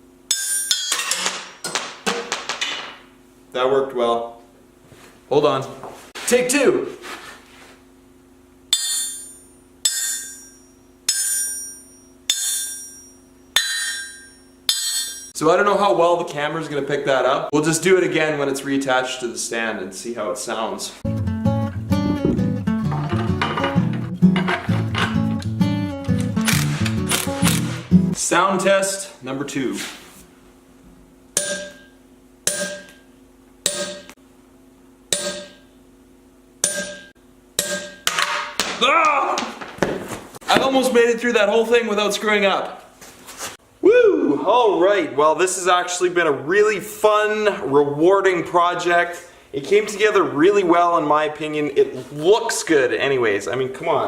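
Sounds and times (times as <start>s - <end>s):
ball bearing striking ringing anvil: 0.3s - 1.7s, 8.7s - 15.4s, 31.4s - 34.2s, 35.1s - 35.7s, 36.6s - 38.7s.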